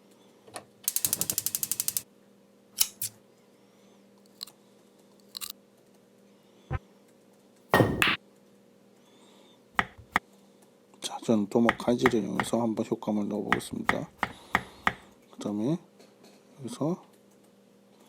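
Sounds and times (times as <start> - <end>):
rapid clicks: 0.9 - 2.0
single knocks and clicks: 9.8 - 10.2.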